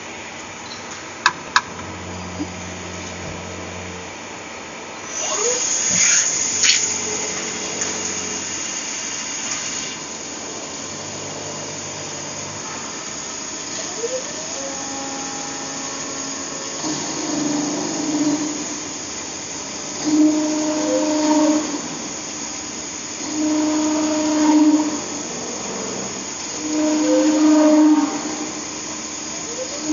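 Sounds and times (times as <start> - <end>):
lathe cutting metal: 0.0 - 29.9
short rising whine: 0.0 - 29.9
high hiss burst: 5.0 - 11.0.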